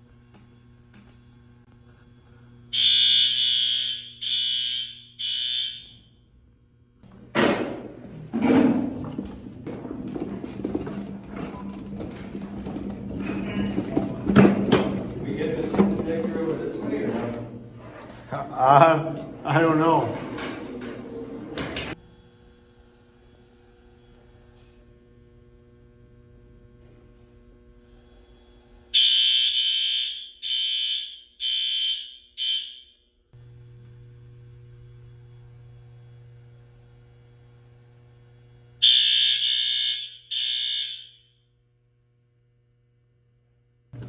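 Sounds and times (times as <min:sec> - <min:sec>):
fire alarm horn blasts: 0:02.7 - 0:06.3, 0:28.9 - 0:33.1, 0:38.8 - 0:41.4.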